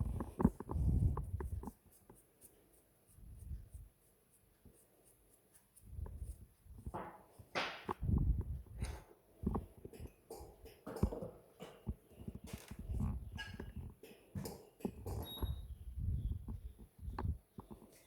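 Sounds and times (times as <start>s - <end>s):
objects being handled: 5.6s - 18.0s.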